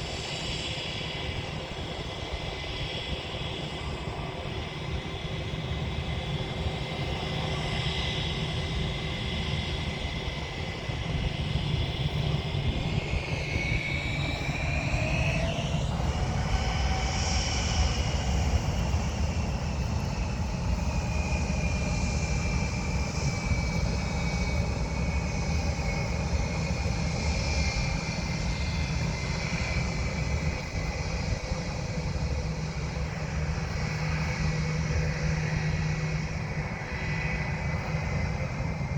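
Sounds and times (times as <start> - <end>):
airplane engines roaring: 0.0 - 38.9.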